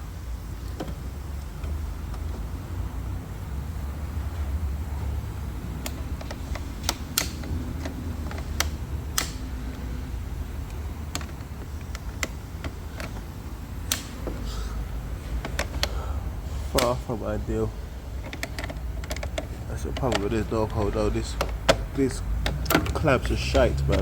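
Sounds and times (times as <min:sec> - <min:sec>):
steady low rumble: 0:00.0 - 0:24.0
clamps clicking on terminals: 0:05.8 - 0:16.0, 0:18.2 - 0:24.0.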